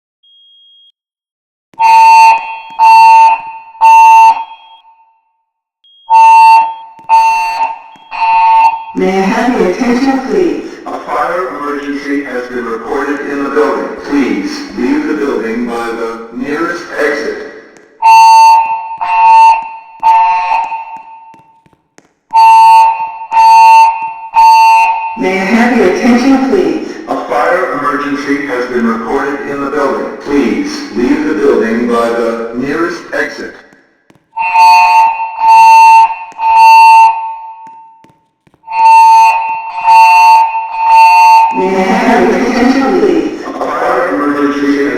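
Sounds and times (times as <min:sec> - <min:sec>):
fire alarm beeps: 0:00.2 - 0:01.0, 0:01.8 - 0:11.2, 0:16.8 - 0:21.6, 0:22.3 - 0:27.1, 0:34.4 - 0:38.0, 0:38.7 - 0:43.5
spoken evacuation messages: 0:09.0 - 0:18.6, 0:25.1 - 0:33.7, 0:41.5 - 0:44.9.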